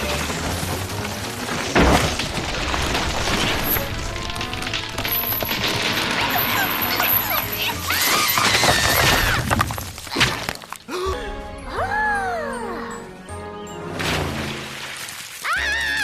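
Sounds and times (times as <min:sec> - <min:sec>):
crashing and shattering effects: 0:00.0 - 0:10.9
cartoon music: 0:11.1 - 0:14.0.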